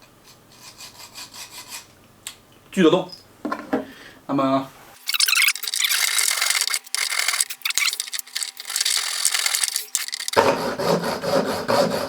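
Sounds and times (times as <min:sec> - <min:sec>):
hacksaw sawing through metal: 0:00.5 - 0:01.9, 0:05.6 - 0:12.0.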